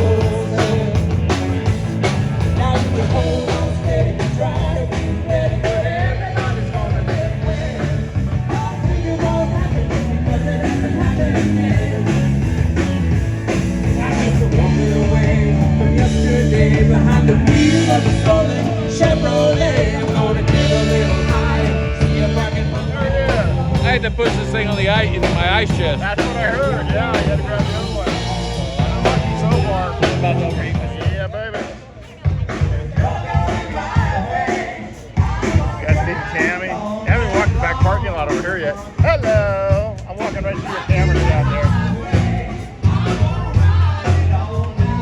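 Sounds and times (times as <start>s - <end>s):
electric guitar: 0.0s - 30.9s
bass guitar: 0.0s - 31.6s, 32.2s - 45.0s
drum kit: 0.0s - 45.0s
person singing: 14.0s - 24.2s.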